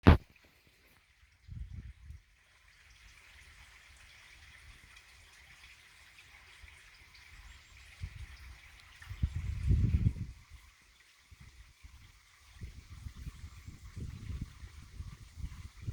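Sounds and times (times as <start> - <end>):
stream water running: 0.0 - 15.9
wind buffeting microphone: 1.4 - 2.2, 7.4 - 10.7, 11.3 - 15.9.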